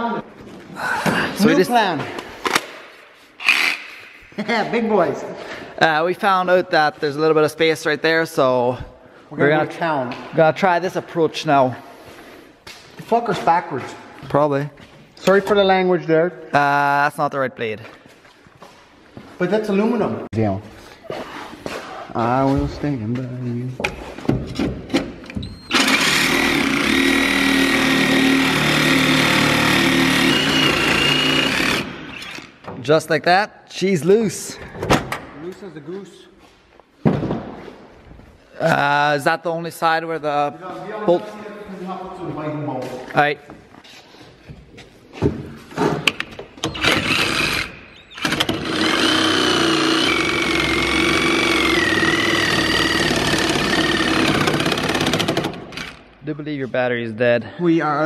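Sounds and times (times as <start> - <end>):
power cutting tool whining: 25.7 - 32.4, 46.7 - 55.9.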